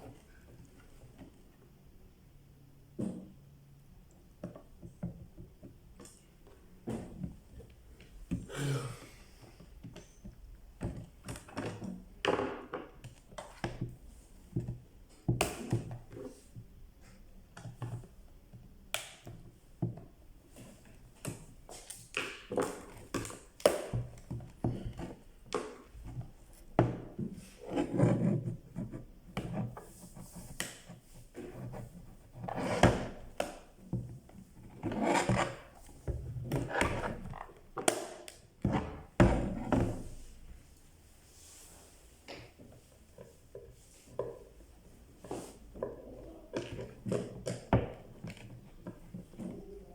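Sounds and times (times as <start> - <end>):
plastic handling clicks and knocks: 9.8 - 20.2.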